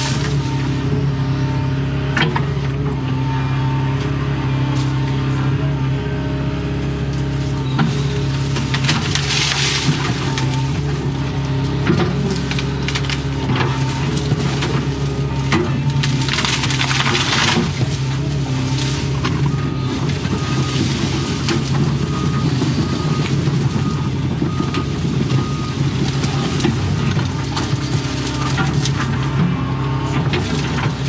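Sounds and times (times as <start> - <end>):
rush of branches and leaves: 0.0 - 1.6, 3.6 - 31.0
excavator diesel engine running: 0.0 - 31.0
wood breaking cracks: 7.2 - 29.3.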